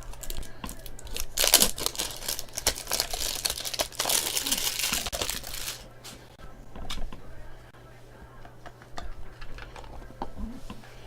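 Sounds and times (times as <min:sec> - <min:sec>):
card packaging crinkling: 0:00.0 - 0:05.9.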